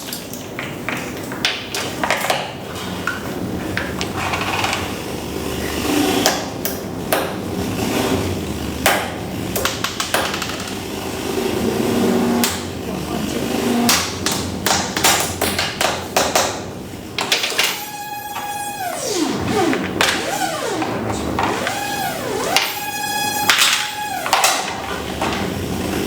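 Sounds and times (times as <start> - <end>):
steady low hum: 10.6 - 26.0.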